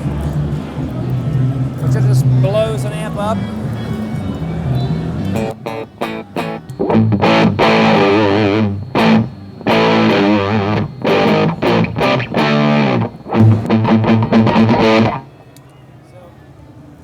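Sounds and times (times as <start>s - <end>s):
distorted electric guitar: 5.3s - 15.3s.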